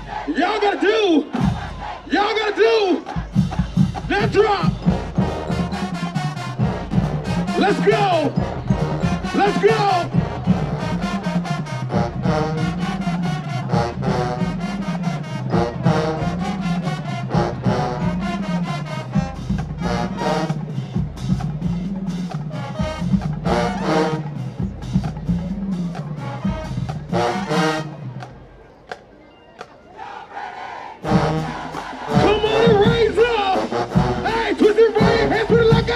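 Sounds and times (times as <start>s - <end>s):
drums beating fast rhythm: 0.0s - 28.4s, 31.0s - 35.9s
marching band playing: 0.0s - 35.9s
brass stabs: 31.0s - 35.9s.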